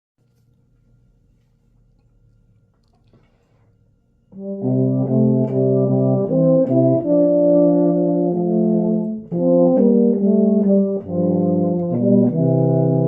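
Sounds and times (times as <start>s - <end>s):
euphoniums playing a hymn: 4.4s - 13.0s.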